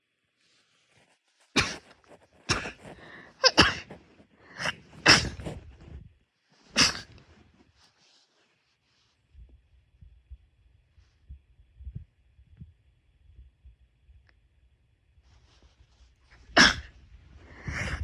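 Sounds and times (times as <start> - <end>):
person sneezing: 1.6 - 5.7, 6.7 - 7.3, 16.5 - 16.9, 17.5 - 18.0.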